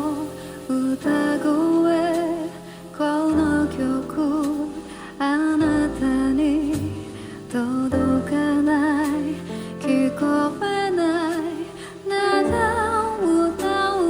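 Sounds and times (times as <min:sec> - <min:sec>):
instrumental backing with bass: 0:00.0 - 0:14.0
woman singing with vibrato: 0:00.0 - 0:14.0.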